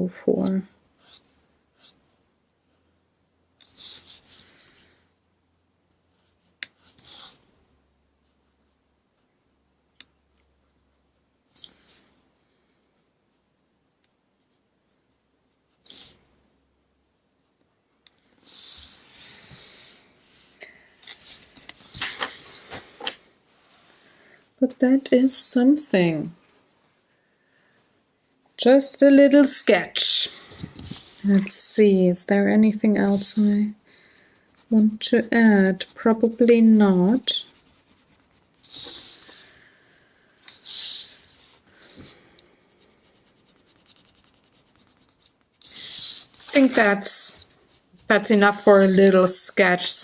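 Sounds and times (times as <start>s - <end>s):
drawing tool scratching on paper: 3.6s - 4.5s, 6.1s - 7.5s, 34.1s - 39.3s, 42.7s - 46.9s.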